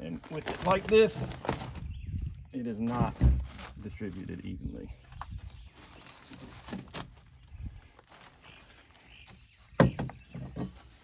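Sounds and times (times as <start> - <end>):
plywood knocking and thudding: 2.9 - 3.7, 9.7 - 10.9.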